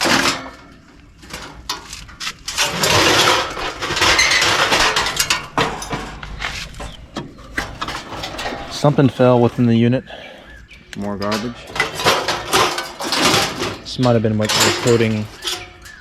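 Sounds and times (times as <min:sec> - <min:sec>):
debris rattling inside cabinet: 0:00.0 - 0:10.3, 0:11.1 - 0:16.0
metal clanking and scraping: 0:00.0 - 0:16.0.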